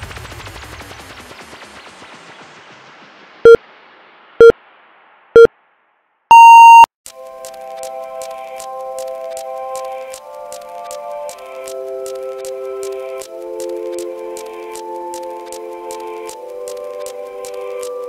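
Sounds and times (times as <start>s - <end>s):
long high beep: 6.3s - 6.9s
short low beeps: 6.3s - 6.9s
background music: 7.1s - 18.0s.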